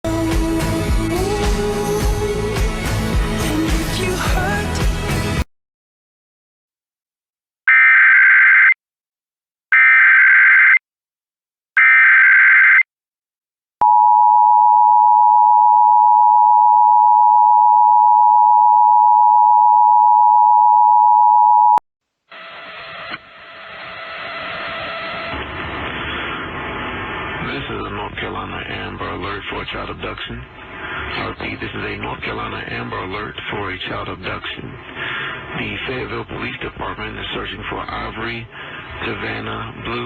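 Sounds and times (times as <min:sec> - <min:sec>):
hiss: 0:22.3 - 0:26.4.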